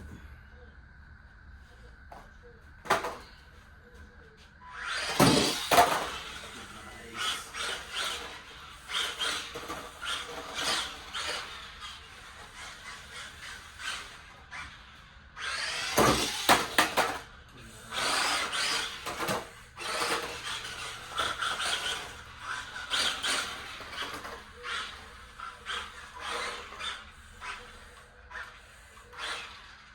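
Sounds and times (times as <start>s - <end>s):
electric motor whining: 4.3s - 29.9s
tyres squealing and scrubbing: 4.6s - 14.7s.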